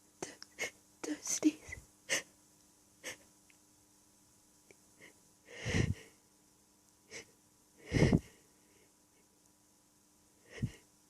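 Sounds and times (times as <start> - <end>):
person breathing sharply: 5.0 - 6.2, 7.1 - 8.5, 10.5 - 10.8.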